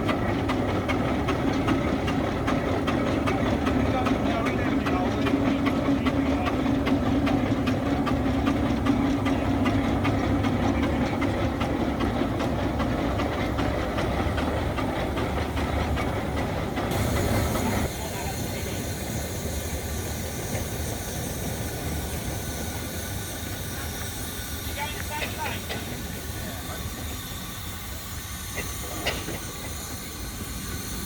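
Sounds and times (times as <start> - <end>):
steam engine running: 0.0 - 31.0
hiss of escaping steam: 16.9 - 31.0.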